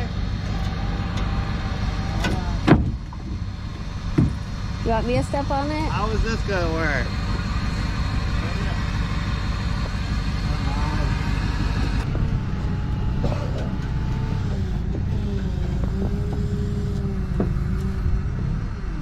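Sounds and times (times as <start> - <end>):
truck engine rumbling: 0.0 - 19.0.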